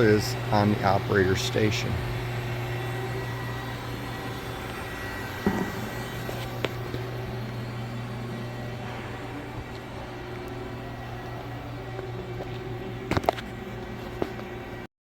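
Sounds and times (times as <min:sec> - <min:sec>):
industrial machine humming: 0:00.0 - 0:14.9.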